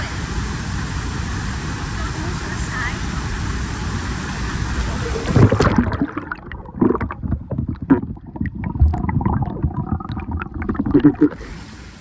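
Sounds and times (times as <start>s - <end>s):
rushing water: 0.0s - 12.0s
muffled underwater splashing: 2.1s - 12.0s.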